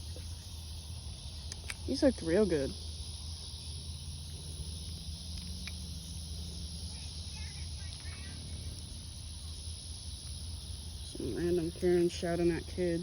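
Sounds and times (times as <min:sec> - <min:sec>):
distant voices shouting: 0:06.6 - 0:09.7.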